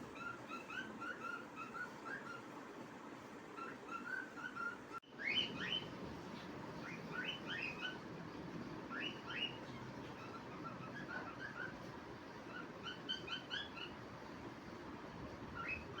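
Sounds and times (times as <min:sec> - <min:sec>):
cockatiel chirping and whistling: 0:00.2 - 0:02.4, 0:03.6 - 0:05.9, 0:06.8 - 0:08.0, 0:08.9 - 0:09.6, 0:10.2 - 0:11.8, 0:12.5 - 0:13.9, 0:15.6 - 0:16.0.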